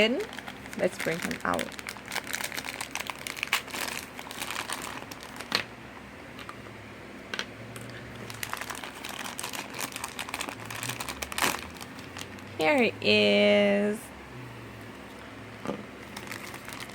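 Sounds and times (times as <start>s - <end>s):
plastic packaging crinkling: 0.0s - 5.7s, 7.8s - 12.8s, 15.6s - 16.9s.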